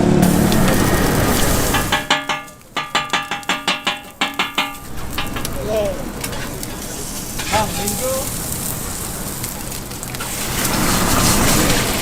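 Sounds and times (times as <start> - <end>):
frying hiss: 0.0 - 12.0
metal spatulas clanging on griddle: 1.3 - 8.1.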